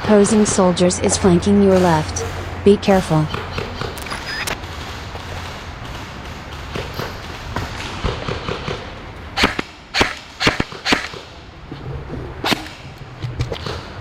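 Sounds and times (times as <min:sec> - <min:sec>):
airsoft gun cracks: 0:09.4 - 0:11.2.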